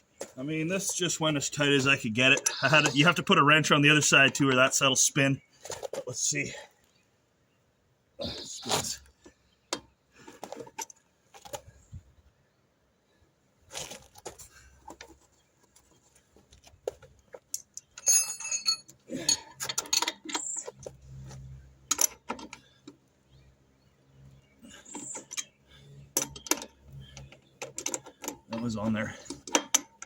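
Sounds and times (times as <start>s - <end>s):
steel wrenches clinking: 17.4s - 20.9s, 21.8s - 23.0s, 24.7s - 30.0s.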